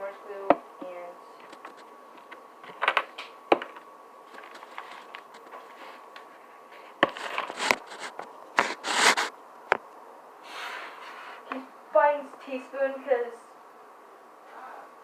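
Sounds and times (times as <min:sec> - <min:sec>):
scraping and rustling: 0:04.2 - 0:09.4.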